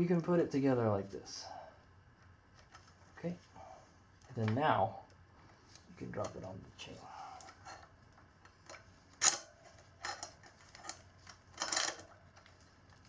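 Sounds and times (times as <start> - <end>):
metal chain clicking and clinking: 9.2 - 12.1
chain rattle: 9.2 - 12.2.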